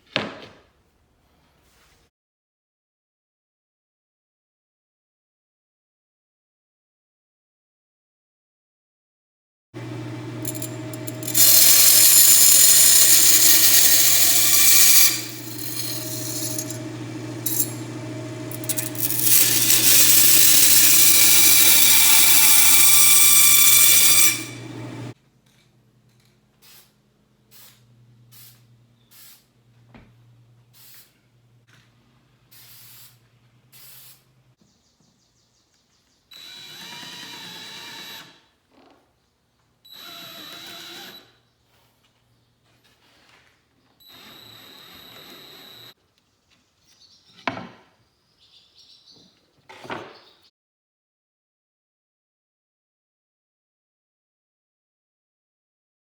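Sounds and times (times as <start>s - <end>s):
power tool motor running: 9.8s - 25.2s, 36.3s - 38.4s, 39.9s - 41.3s, 44.1s - 45.9s.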